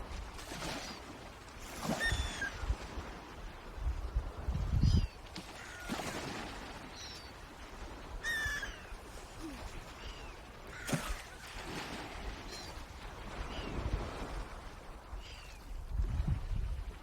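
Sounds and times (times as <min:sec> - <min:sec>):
sharp knocks or splashes: 0:10.8 - 0:12.1.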